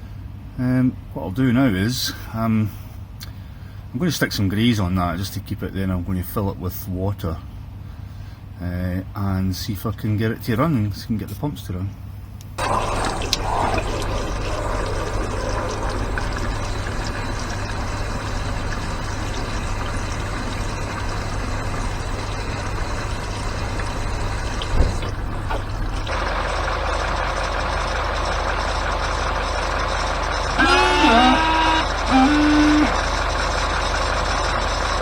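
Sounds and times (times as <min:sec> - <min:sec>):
diesel engine idling: 0:12.6 - 0:35.0.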